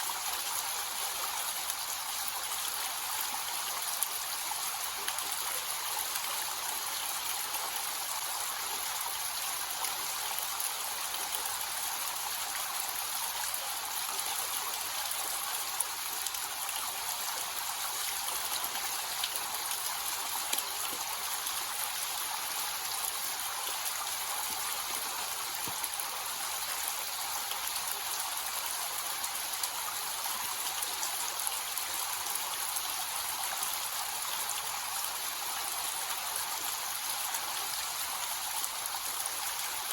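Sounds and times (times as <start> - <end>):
small waterfall splashing: 0.0 - 39.9.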